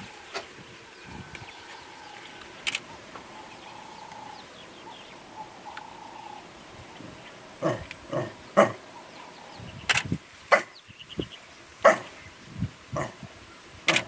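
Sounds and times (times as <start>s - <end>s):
wild dogs yelping and barking: 7.5s - 9.6s, 11.8s - 12.2s.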